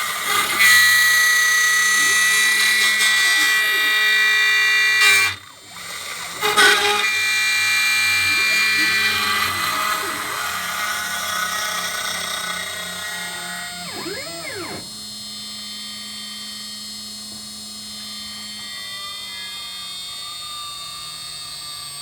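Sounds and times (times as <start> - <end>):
router spindle whining: 0.0 - 22.0.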